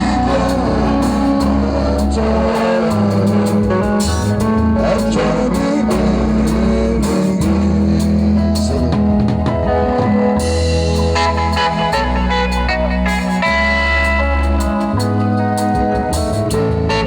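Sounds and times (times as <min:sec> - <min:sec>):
bass line: 0:00.0 - 0:17.0
drum kit beat: 0:00.0 - 0:17.0
guitar: 0:00.0 - 0:17.0.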